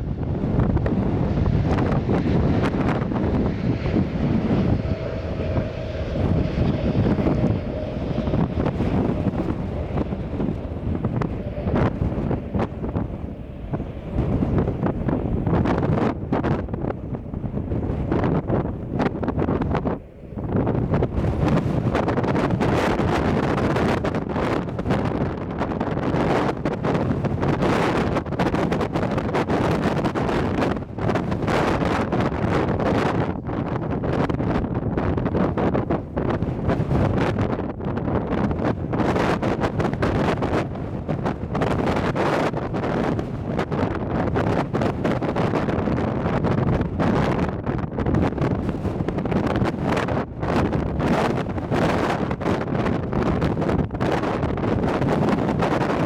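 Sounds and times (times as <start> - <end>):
faint whine: 0.0 - 22.1
low rumble: 0.0 - 24.4
wind buffeting microphone: 0.0 - 56.0.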